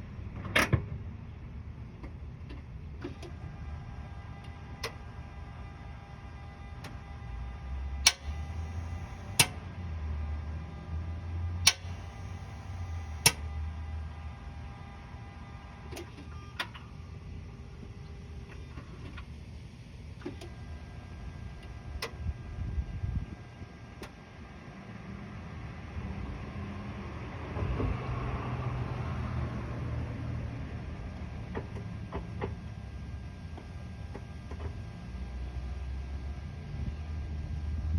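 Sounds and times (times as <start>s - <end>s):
low steady hum: 0.0s - 27.1s
sharp clicks: 8.0s - 8.6s, 11.6s - 12.1s.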